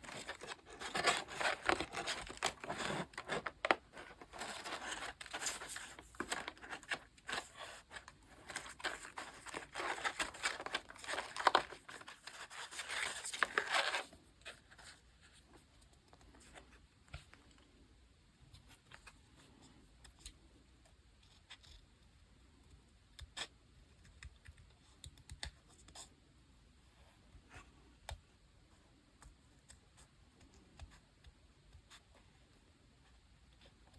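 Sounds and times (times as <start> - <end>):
paper crinkling and tearing: 0.0 - 15.0.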